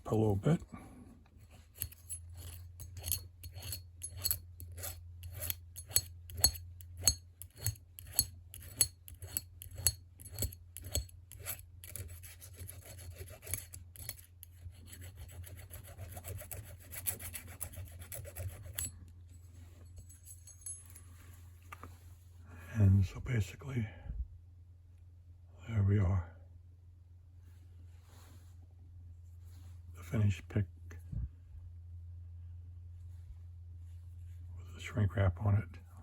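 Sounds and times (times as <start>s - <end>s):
hand file rasping on wire: 1.4s - 18.9s.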